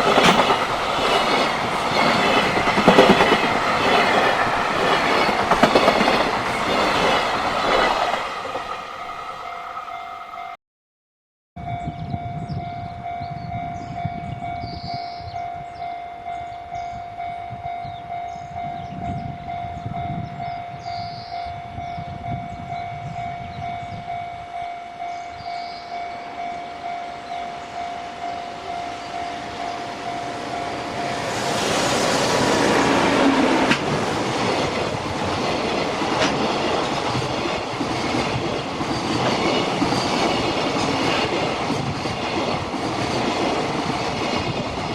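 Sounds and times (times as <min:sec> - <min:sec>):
freight train passing: 0:00.0 - 0:10.6, 0:11.6 - 0:44.9
level crossing bell ringing: 0:11.8 - 0:31.2.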